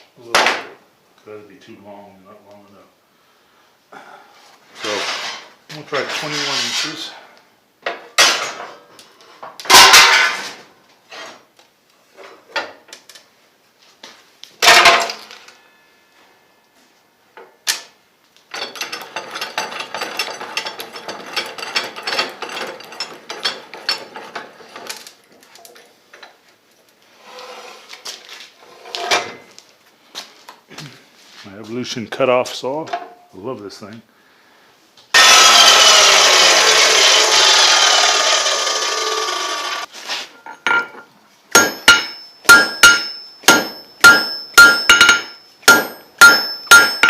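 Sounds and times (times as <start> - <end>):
metal tools knocking on bench: 41.6 - 47.0.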